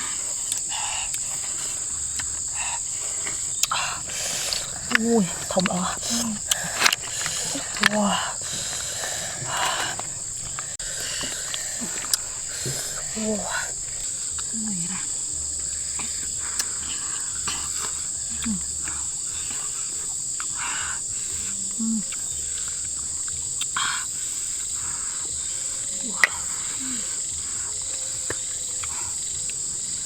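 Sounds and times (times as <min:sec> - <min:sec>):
high-pitched insect drone: 0:00.0 - 0:30.0
rustling noises: 0:01.1 - 0:18.3.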